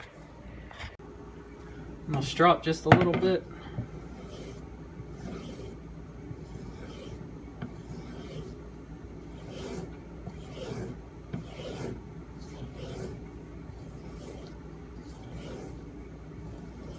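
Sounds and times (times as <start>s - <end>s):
knife blade rubbing on strop: 9.3s - 13.2s.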